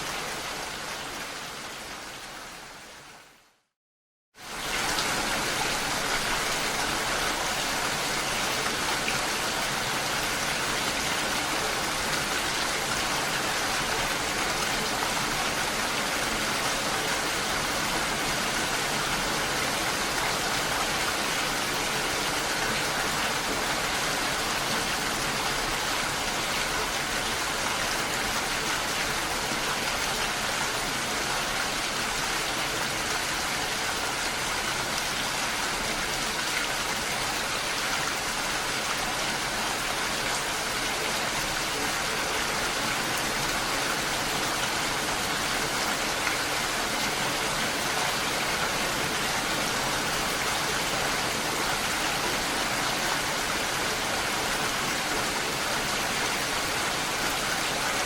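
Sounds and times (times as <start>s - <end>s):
steady rain falling: 0.0s - 3.7s, 4.4s - 58.0s.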